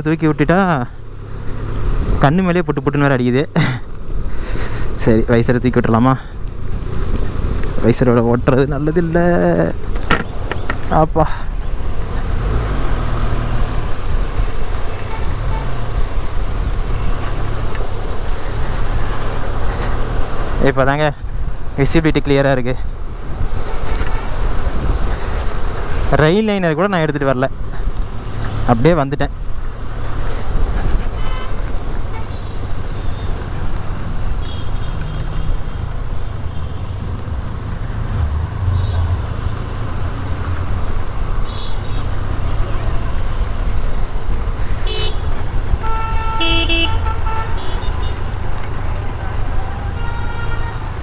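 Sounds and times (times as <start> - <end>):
wind noise on microphone: 23.2 - 26.1.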